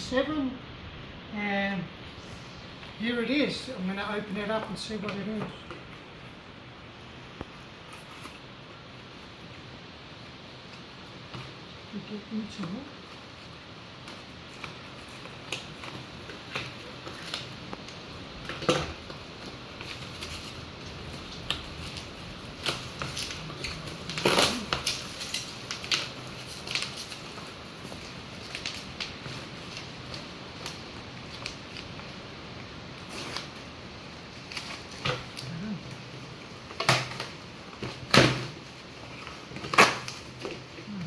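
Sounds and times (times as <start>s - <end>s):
packaging rustle: 12.6s - 41.0s
cardboard package crinkling: 12.7s - 41.0s.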